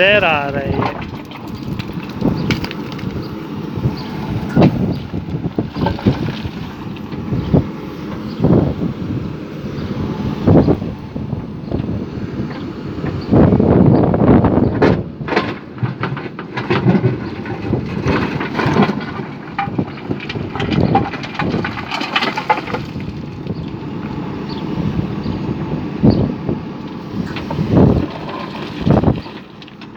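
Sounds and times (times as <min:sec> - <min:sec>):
excavator working: 0:00.0 - 0:29.9
wind buffeting microphone: 0:00.0 - 0:29.9
sharp knocks and clatters: 0:14.8 - 0:23.0.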